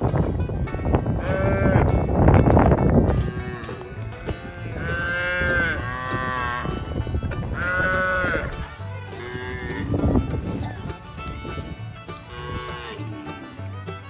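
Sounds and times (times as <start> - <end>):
cow mooing: 1.2 - 1.9, 4.5 - 6.8, 7.6 - 13.7.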